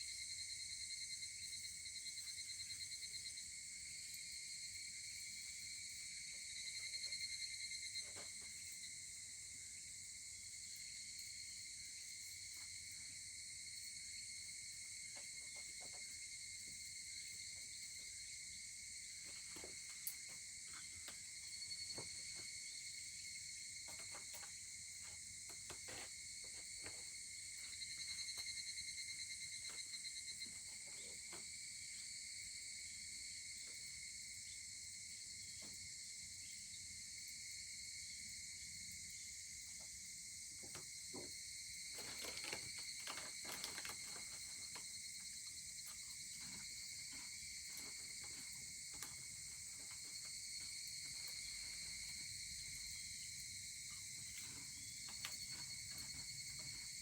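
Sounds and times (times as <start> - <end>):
evening insects chorus: 0.0 - 57.0.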